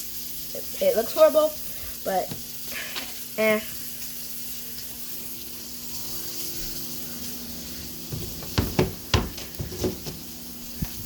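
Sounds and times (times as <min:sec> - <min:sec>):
patty sizzling in a frying pan: 0:00.0 - 0:11.0
sharp knocks: 0:08.2 - 0:09.9.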